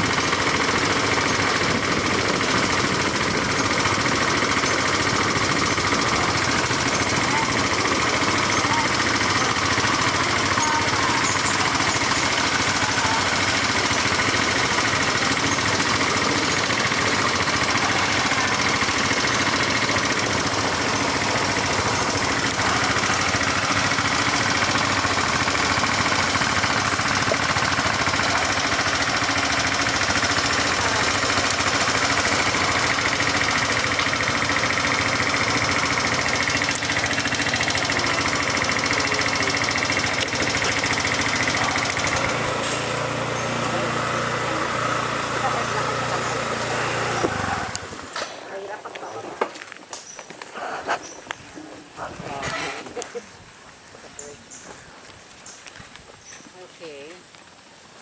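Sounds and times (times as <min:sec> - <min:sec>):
atv engine running: 0:00.0 - 0:57.6.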